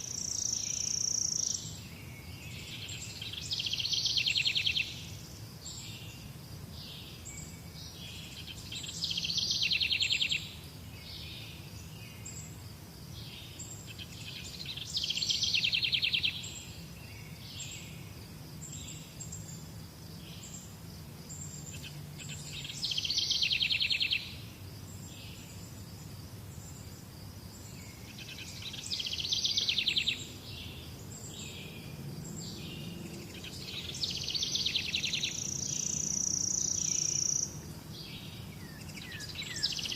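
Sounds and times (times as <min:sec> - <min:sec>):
birds chirping: 0:26.5 - 0:39.9.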